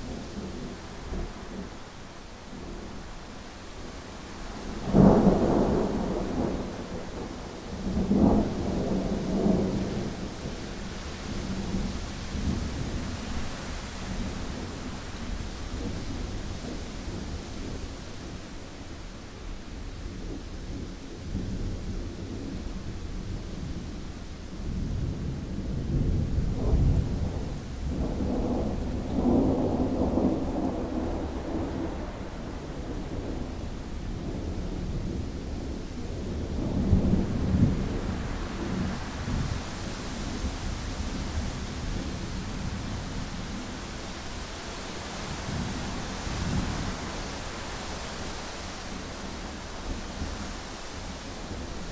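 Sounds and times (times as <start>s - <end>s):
steady wind: 0.0s - 51.9s
thunder rumbling: 24.6s - 51.9s.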